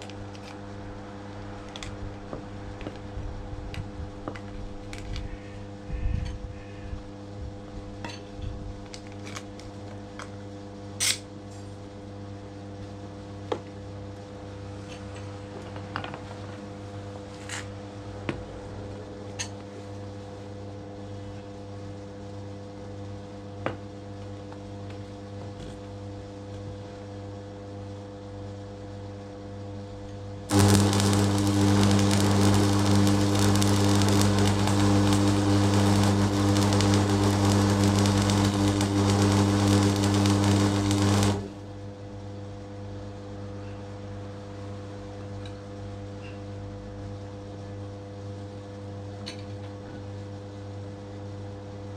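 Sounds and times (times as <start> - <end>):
steady electrical hum: 0.0 - 15.6, 27.0 - 49.1
electric machine running: 30.5 - 41.7.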